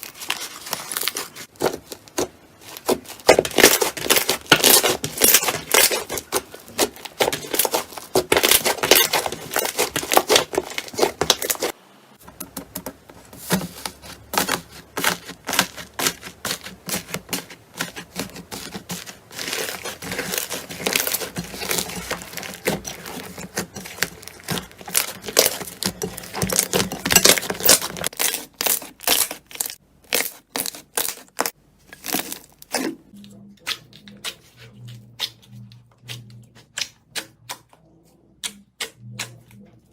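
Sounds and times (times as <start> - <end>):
slime crackling and popping: 0.0 - 11.8, 18.0 - 32.9.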